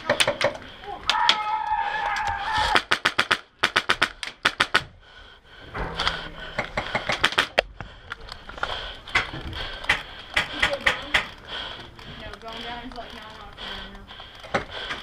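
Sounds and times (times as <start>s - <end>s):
airsoft guns firing bursts: 2.8s - 4.9s.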